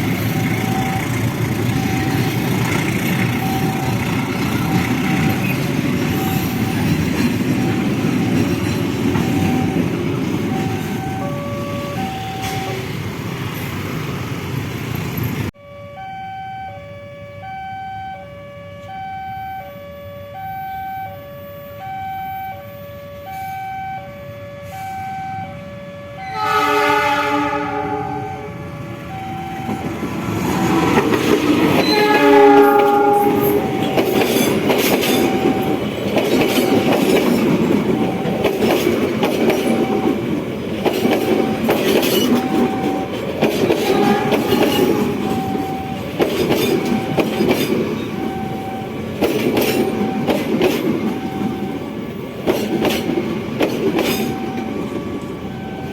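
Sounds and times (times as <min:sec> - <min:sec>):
train rumbling past: 0:00.0 - 0:15.6, 0:24.2 - 0:55.9
level crossing alarm two-note signal: 0:09.2 - 0:12.9, 0:15.6 - 0:30.1, 0:44.0 - 0:46.2, 0:48.1 - 0:49.1, 0:49.8 - 0:52.0, 0:54.2 - 0:55.9
locomotive horn: 0:22.6 - 0:28.8, 0:30.2 - 0:34.2, 0:43.7 - 0:46.0.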